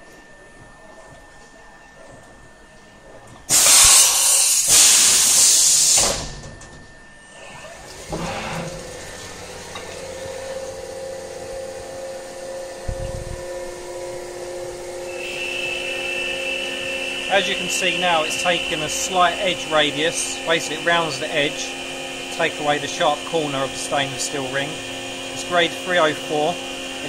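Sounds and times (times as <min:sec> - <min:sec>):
spindle whine: 0:00.0 - 0:27.0
milling machine air hiss: 0:03.5 - 0:06.4, 0:13.7 - 0:27.0.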